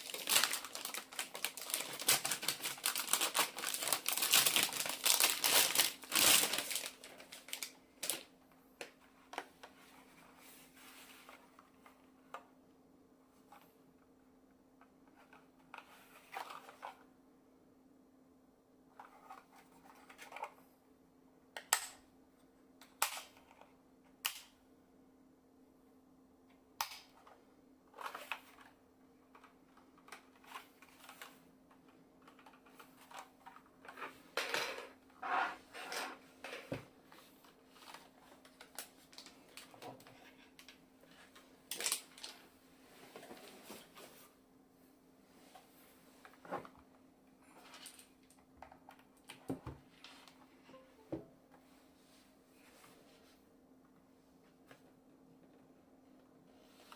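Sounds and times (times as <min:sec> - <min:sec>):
packaging scraping and rustling: 0:00.0 - 0:08.2
faint steady hum: 0:00.0 - 0:56.9.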